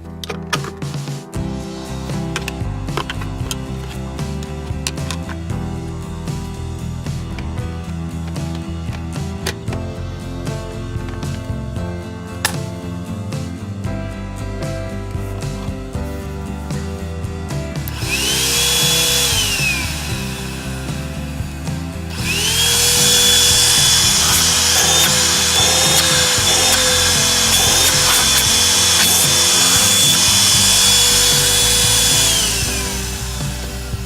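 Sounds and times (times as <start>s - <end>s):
background music: 0.0s - 34.0s
handheld vacuum motor whining: 17.9s - 34.0s.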